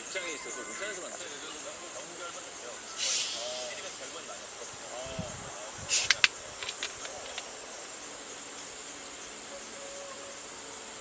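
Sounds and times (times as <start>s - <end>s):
insects chorus: 0.0s - 11.0s
soft clicks: 6.0s - 7.5s.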